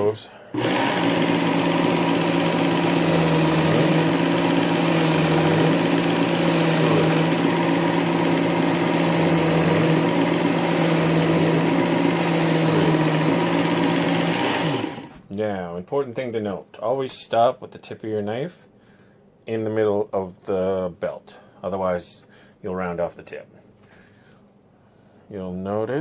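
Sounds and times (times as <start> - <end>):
belt sharpener grinding knife blade: 2.8 - 7.4.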